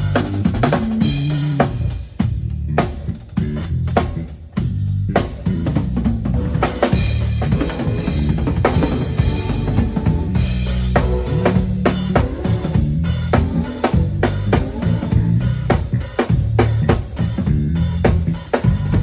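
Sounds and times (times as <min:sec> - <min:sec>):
band music under drums: 0:00.0 - 0:19.0
drum kit playing: 0:00.0 - 0:19.0
steady low notes: 0:00.0 - 0:19.0.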